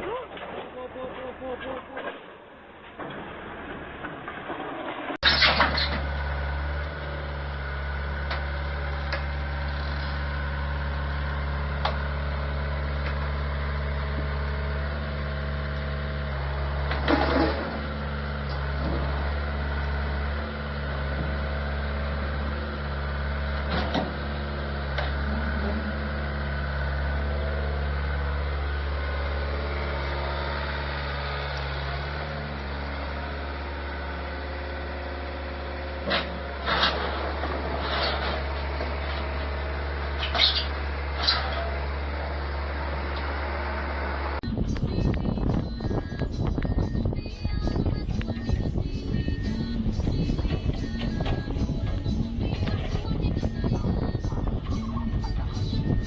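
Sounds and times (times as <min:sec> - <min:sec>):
heavy engine running steadily: 0:00.0 - 0:56.0
clanks: 0:36.0 - 0:41.9.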